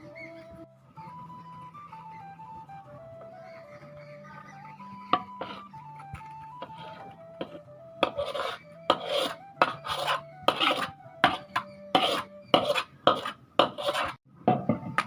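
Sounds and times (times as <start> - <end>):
soft background music: 0.0 - 12.9
utensil scraping in a pan: 5.1 - 14.2.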